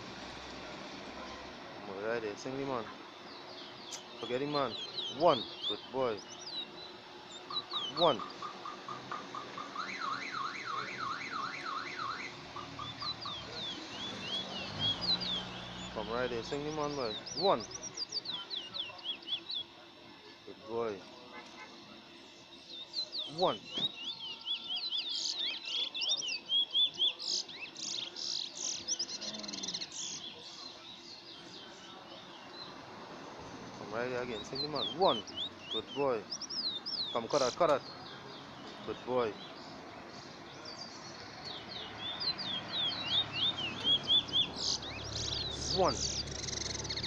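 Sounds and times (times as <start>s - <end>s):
bird chirps: 0.2s - 20.6s, 21.2s - 47.0s
bullfinch singing: 2.3s - 19.7s, 22.5s - 32.8s, 33.7s - 47.0s
car alarm wailing: 7.4s - 19.4s.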